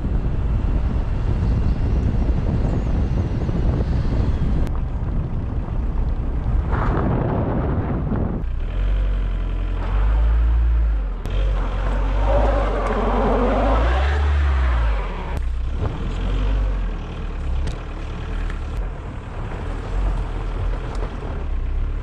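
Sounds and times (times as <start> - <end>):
wind buffeting microphone: 0.0 - 8.6.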